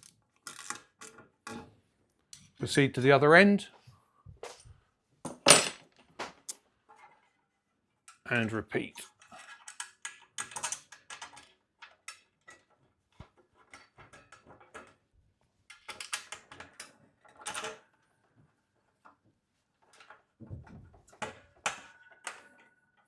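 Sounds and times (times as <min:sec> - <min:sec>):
metal parts clicking and clinking: 0:05.4 - 0:05.8.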